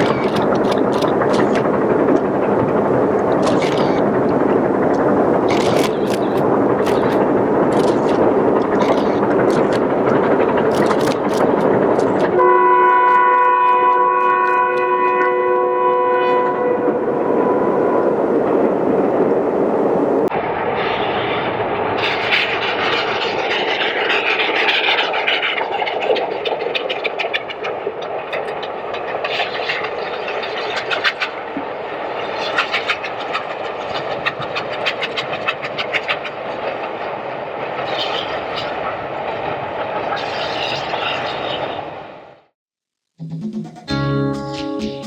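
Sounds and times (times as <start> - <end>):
steady rushing steam: 0.0 - 15.0, 16.0 - 42.5
rail clatter: 0.0 - 15.4, 16.6 - 42.2
locomotive exhaust beats: 0.0 - 17.7
steam whistle chord: 12.4 - 18.1, 43.2 - 45.0.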